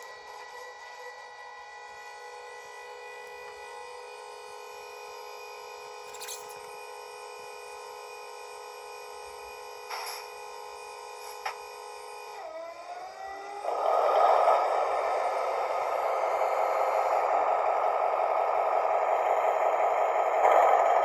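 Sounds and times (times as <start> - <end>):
model diesel locomotive idling: 13.6 - 21.0.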